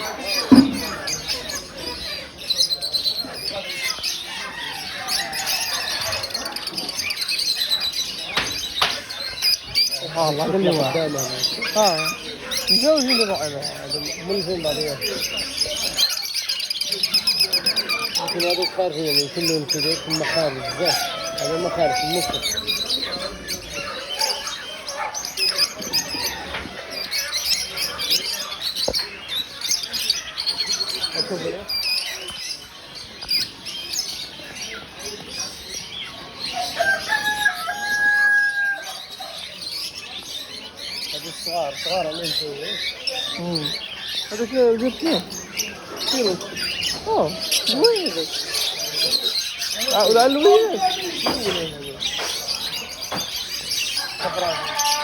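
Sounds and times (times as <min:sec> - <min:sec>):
caged birds chirping: 0:00.0 - 0:55.0
short knock: 0:00.5 - 0:00.9.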